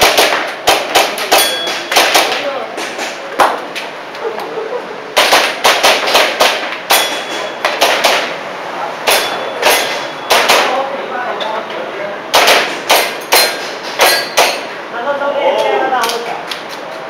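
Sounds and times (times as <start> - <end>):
airsoft pistol shots: 0.0 - 2.4, 5.2 - 8.4, 9.0 - 10.8, 12.3 - 14.7.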